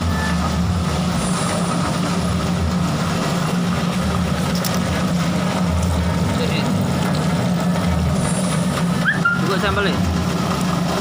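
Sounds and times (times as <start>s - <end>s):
washing machine motor hum: 0.0s - 11.0s.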